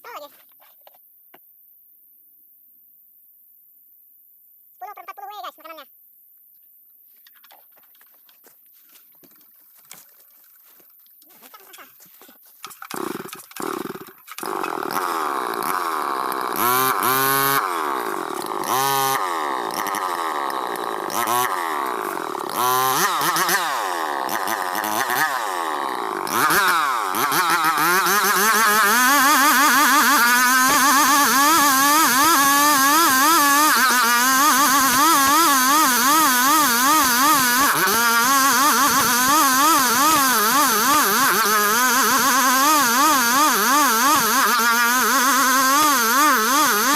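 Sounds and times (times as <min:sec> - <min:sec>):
chainsaw revving and sawing wood: 0:11.4 - 0:46.9.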